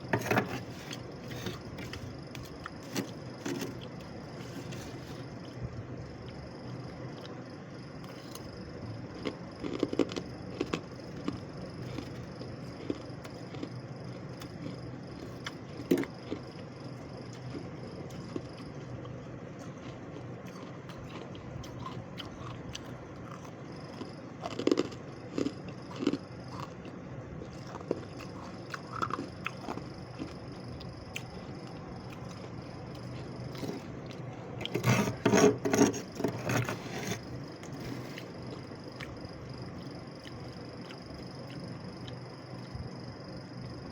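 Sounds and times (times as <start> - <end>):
freezer frost crunching: 0.0 - 5.6.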